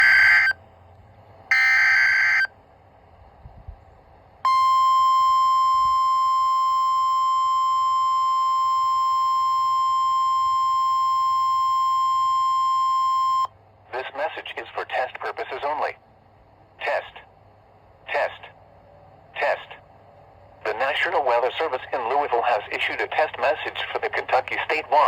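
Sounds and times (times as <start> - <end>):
steady alert beep: 0.0 - 0.5, 1.5 - 2.5.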